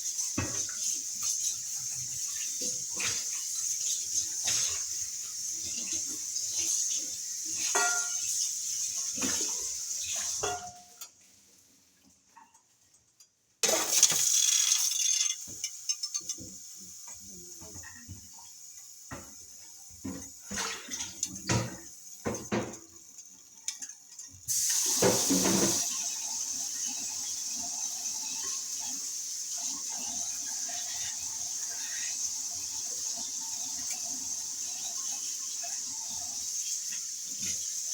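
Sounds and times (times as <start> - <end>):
tap water running: 0.0 - 12.8, 13.6 - 37.9
dishes and utensils clinking: 7.6 - 8.5, 9.1 - 11.2, 13.6 - 16.6.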